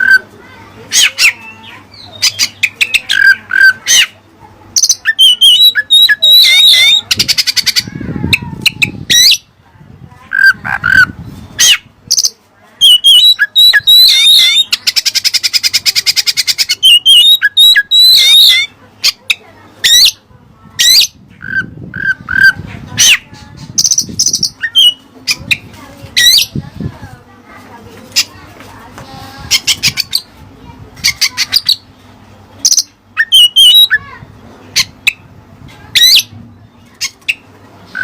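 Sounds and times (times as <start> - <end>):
songbird singing whistled notes: 4.8 - 7.8, 12.1 - 18.7, 32.6 - 34.0.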